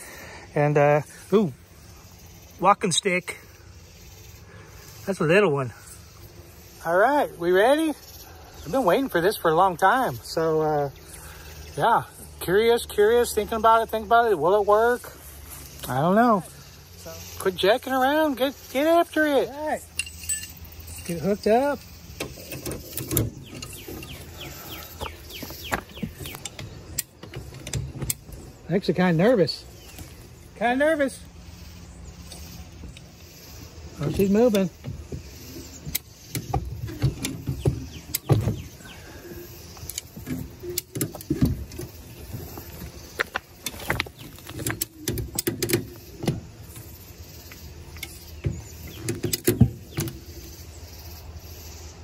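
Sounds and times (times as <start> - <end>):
metal chain clicks and clinks: 19.9 - 21.4
metallic clicks knocks and creaks: 34.8 - 38.7, 39.8 - 46.9, 47.5 - 50.3.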